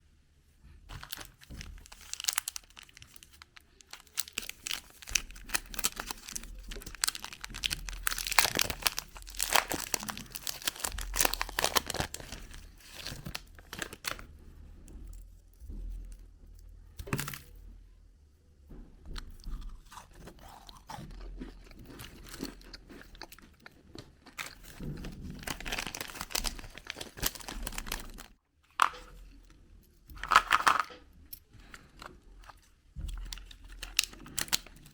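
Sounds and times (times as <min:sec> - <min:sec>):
candy wrappers crinkling: 0:00.9 - 0:14.3, 0:19.4 - 0:29.5, 0:30.1 - 0:34.9.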